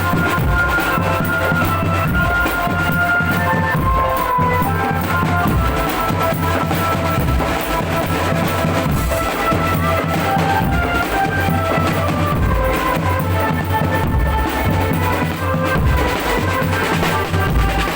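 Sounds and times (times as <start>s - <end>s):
snare drums: 0.0s - 17.9s
bass drums: 12.3s - 13.0s, 15.7s - 17.9s.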